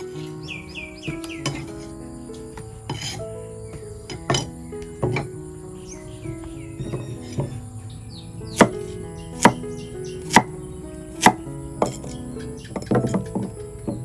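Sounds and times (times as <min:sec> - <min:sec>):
knife chopping on wooden board: 0:01.0 - 0:01.9, 0:02.5 - 0:05.3, 0:06.8 - 0:07.6, 0:08.5 - 0:09.6, 0:10.2 - 0:10.5, 0:11.2 - 0:12.2, 0:12.8 - 0:13.5.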